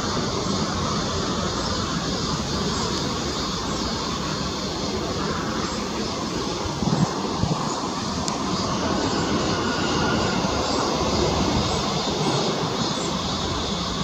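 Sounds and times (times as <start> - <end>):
jet airliner engines running: 0.0 - 14.0.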